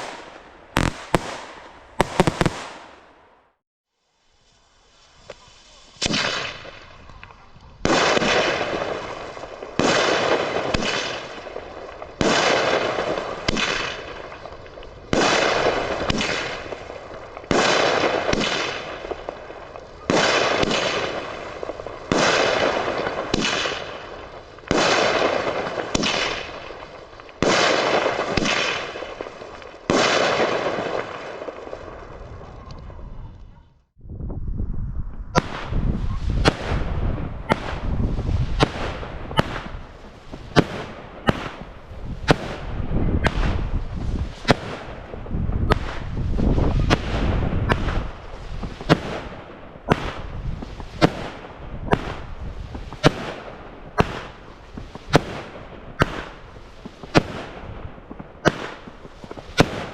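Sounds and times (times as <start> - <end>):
firework bangs: 0.0 - 3.6, 5.3 - 7.1, 7.8 - 33.2, 35.3 - 59.9.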